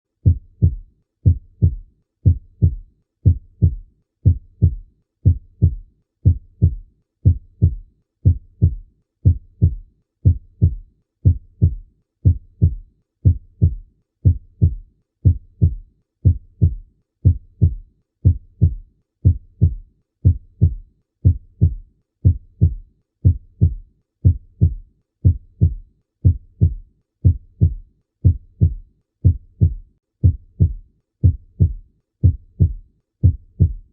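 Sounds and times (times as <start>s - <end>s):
heartbeat thumping: 0.2s - 33.9s.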